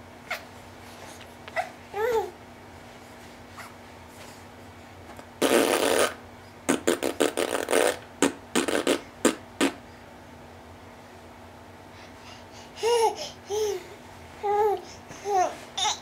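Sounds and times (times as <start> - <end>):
baby blowing raspberries: 5.4 - 9.8.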